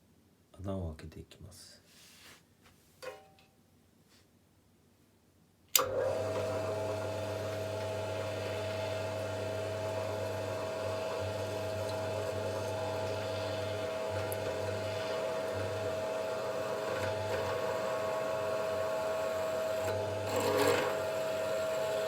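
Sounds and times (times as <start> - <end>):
electric drill whining: 5.8 - 22.0.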